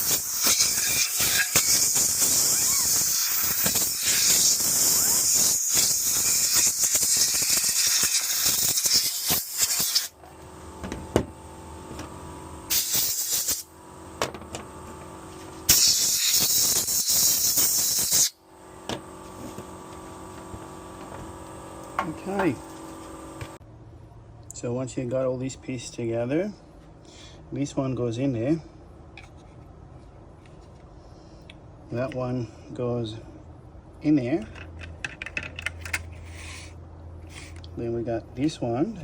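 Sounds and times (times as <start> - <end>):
compressed-air blow gun hissing: 0.0 - 10.2, 12.7 - 13.7, 15.7 - 18.4.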